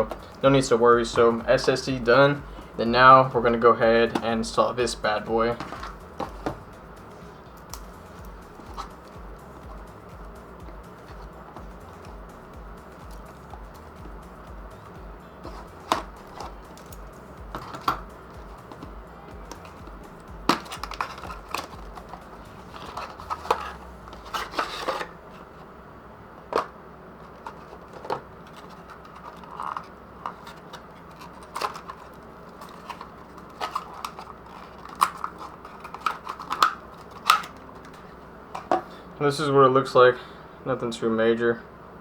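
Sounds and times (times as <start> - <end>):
packaging crinkling: 20.5 - 25.5, 27.3 - 38.7.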